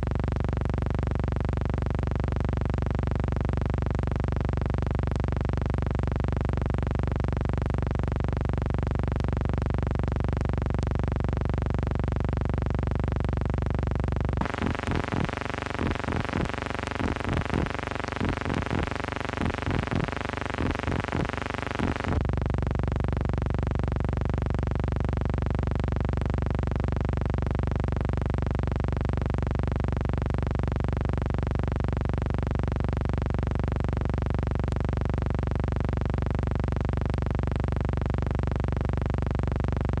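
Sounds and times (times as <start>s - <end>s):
quick repeated synth notes: 14.4s - 22.2s
synthesizer drone: 14.4s - 22.2s.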